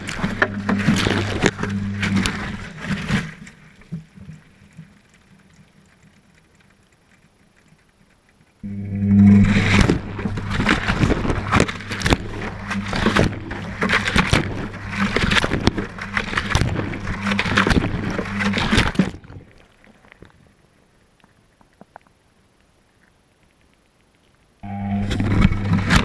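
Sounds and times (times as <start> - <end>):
washing machine motor hum: 0.0 - 2.9, 8.6 - 18.7, 24.6 - 26.0
water sloshing: 0.0 - 22.0.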